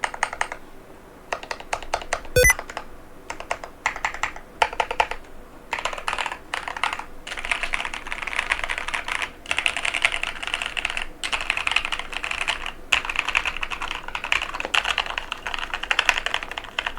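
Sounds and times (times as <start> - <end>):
mechanical keyboard typing: 13.2 - 16.8.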